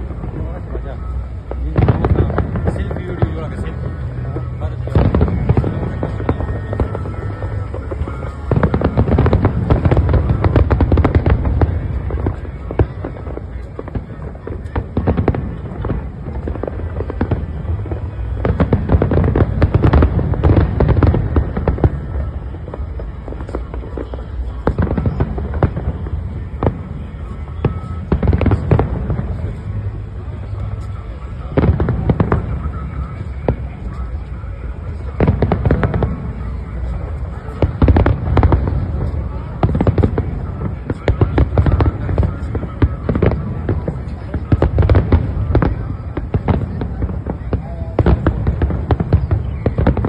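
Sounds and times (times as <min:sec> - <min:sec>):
deep fireworks booms: 0:00.0 - 0:50.0
fireworks bangs and crackles: 0:00.0 - 0:50.0.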